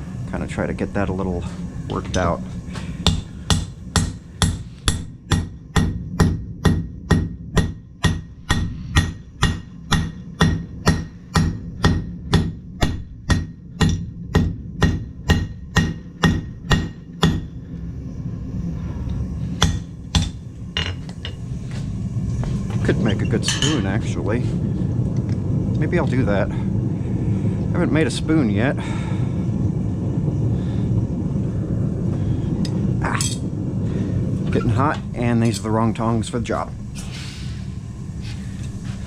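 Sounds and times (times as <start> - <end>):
hammer striking steel on anvil: 3.0 - 17.5, 19.6 - 21.4.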